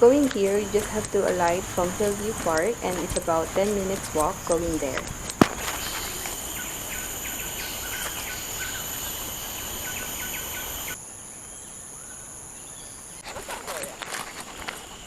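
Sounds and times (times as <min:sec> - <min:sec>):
insects droning: 0:00.0 - 0:15.0
bird chirps: 0:05.4 - 0:11.0.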